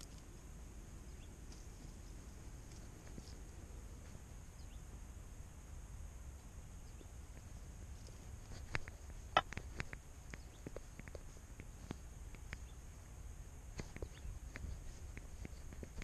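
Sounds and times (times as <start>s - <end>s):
low wind rumble on microphone: 0.0s - 16.0s
small clicks and taps: 8.5s - 12.7s, 13.8s - 16.0s.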